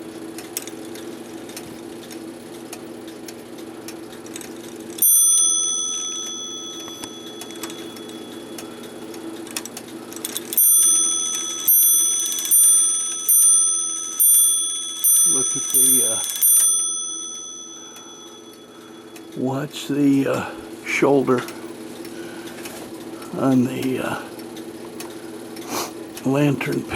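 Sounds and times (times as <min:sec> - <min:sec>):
clock mechanism whirring: 0:00.0 - 0:26.9
clock hammer striking and ringing: 0:05.0 - 0:08.6, 0:10.2 - 0:19.3.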